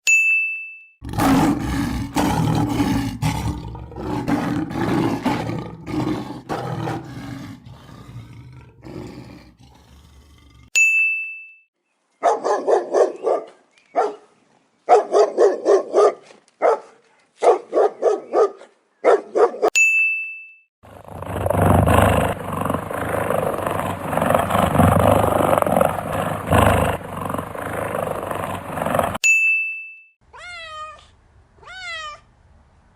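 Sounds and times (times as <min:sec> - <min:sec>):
cheetah growling: 0:01.0 - 0:10.7, 0:20.9 - 0:29.2
lion roaring: 0:01.0 - 0:10.7, 0:20.9 - 0:29.2.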